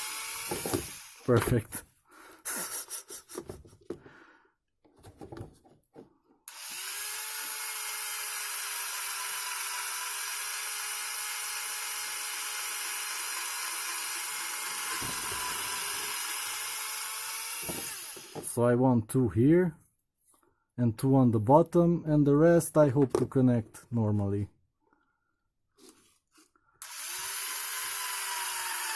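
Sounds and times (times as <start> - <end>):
electric drill boring plastic: 0.0 - 1.4, 6.5 - 18.5, 26.8 - 28.9.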